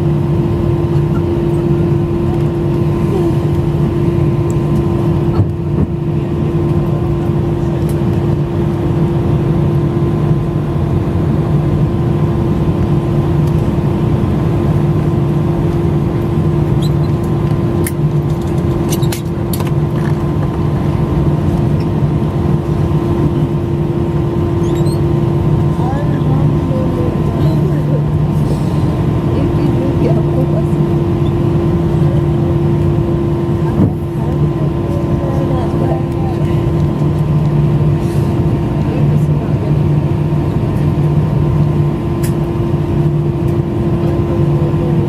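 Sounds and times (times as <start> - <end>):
airliner cabin drone: 0.0 - 45.0.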